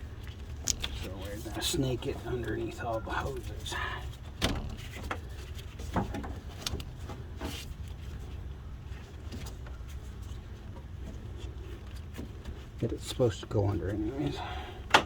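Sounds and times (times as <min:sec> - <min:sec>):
steady low rumble: 0:00.0 - 0:05.8.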